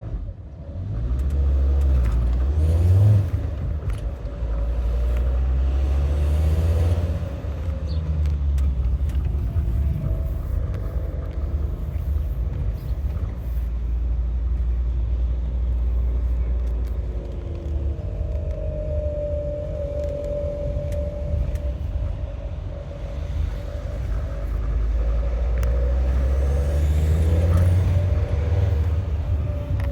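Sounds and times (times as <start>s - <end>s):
van engine rumbling: 0.0s - 29.9s
steady squealing tone: 15.6s - 29.9s.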